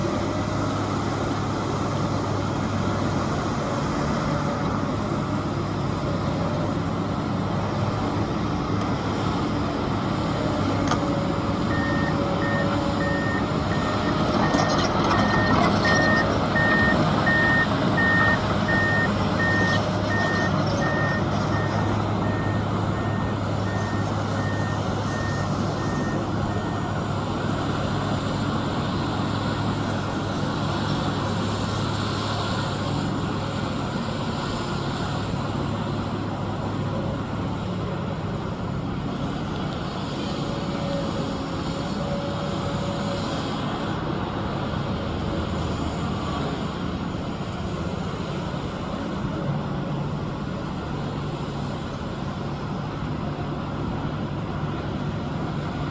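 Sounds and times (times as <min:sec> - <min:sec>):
heavy construction machinery running: 0:00.0 - 0:55.9
reversing alarm beeping: 0:11.7 - 0:26.8.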